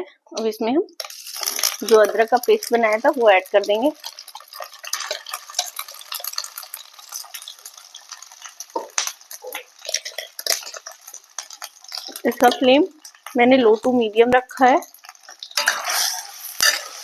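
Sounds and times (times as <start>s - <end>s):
metal spoon scraping and clinking: 1.0s - 7.8s, 9.8s - 13.3s, 14.8s - 17.0s
oil frying hiss: 1.0s - 17.0s.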